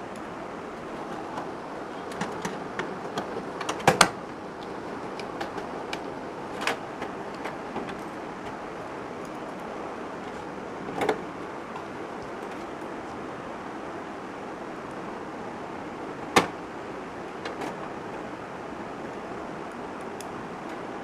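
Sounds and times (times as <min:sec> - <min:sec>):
steady background hiss: 0:00.0 - 0:21.0
clicks and knocks of handling hardware: 0:01.0 - 0:08.6.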